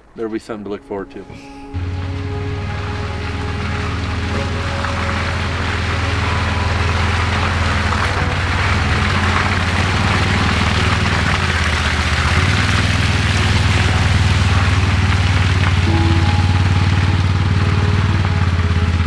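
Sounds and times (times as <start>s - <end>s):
ground noise: 0.0s - 19.0s
vehicle engine running: 1.7s - 19.0s.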